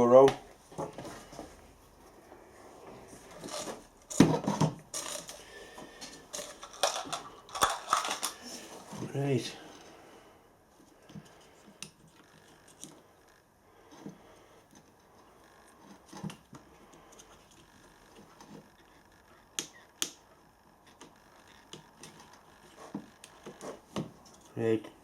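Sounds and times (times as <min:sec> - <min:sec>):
plastic parts clicking: 0:03.4 - 0:05.4, 0:06.0 - 0:08.4.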